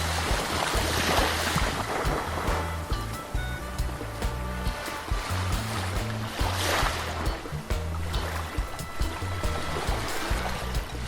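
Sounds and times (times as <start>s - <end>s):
sea surf: 0.0s - 3.3s, 4.6s - 7.4s
music with bass and beat: 0.0s - 11.0s.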